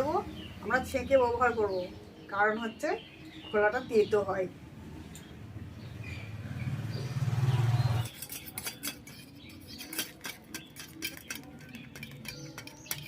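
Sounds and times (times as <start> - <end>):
spoon clinking and scraping metal sieve: 8.0 - 13.0.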